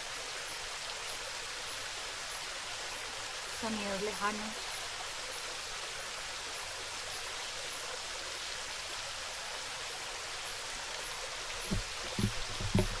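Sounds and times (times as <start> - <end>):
stream water rushing: 11.4 - 13.0
low thumps: 11.6 - 13.0.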